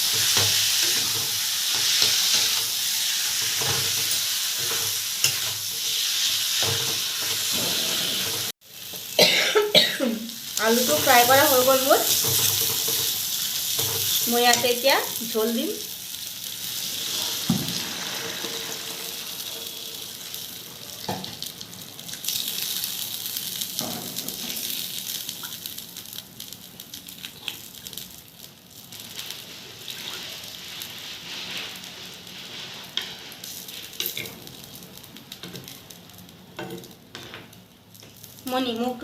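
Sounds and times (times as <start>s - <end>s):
food sizzling in a pan: 0.0s - 39.0s.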